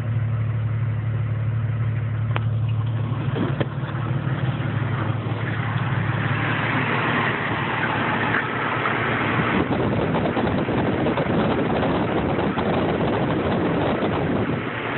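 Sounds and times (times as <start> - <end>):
car engine idling roughly: 0.0 - 6.5.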